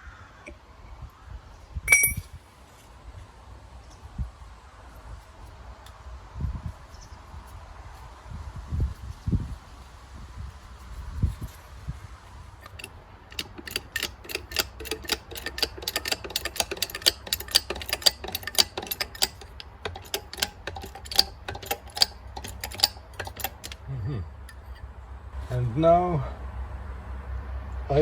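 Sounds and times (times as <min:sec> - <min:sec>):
ratchet wrench clicking: 0:12.6 - 0:23.8.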